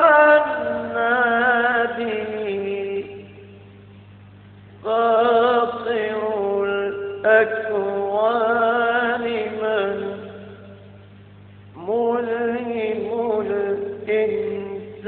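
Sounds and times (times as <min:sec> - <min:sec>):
man chanting melismatically: 0:00.0 - 0:03.4, 0:04.8 - 0:10.7, 0:11.8 - 0:15.0
faint low hum: 0:00.0 - 0:15.0.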